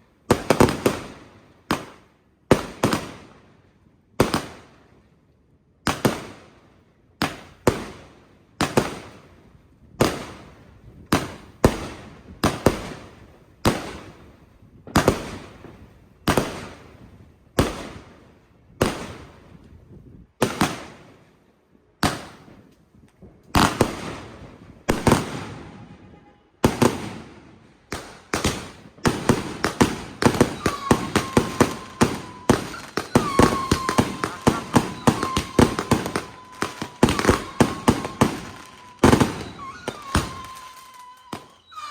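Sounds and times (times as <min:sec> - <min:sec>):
fireworks banging: 0:23.3 - 0:41.9.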